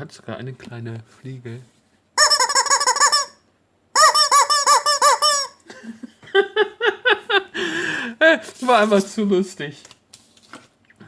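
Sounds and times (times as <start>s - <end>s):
rubber chicken toy squawking: 2.2s - 3.4s, 4.0s - 5.6s.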